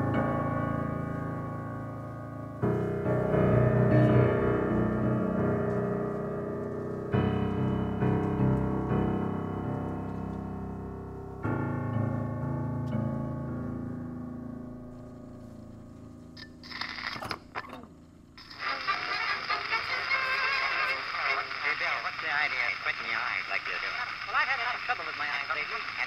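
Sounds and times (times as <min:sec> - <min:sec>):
keyboard sustained chords: 0:00.0 - 0:16.8.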